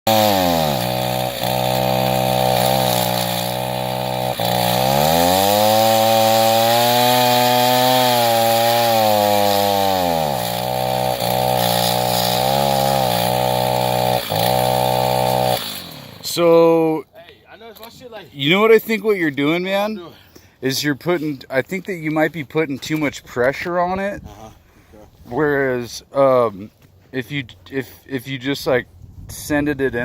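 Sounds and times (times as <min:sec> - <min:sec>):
chainsaw cutting under load: 0:00.1 - 0:16.5.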